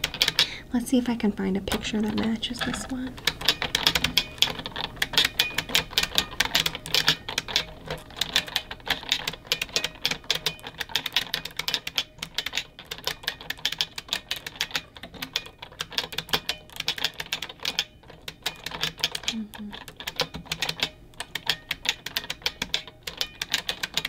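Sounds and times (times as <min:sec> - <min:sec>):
mechanical keyboard typing: 0:00.0 - 0:24.0.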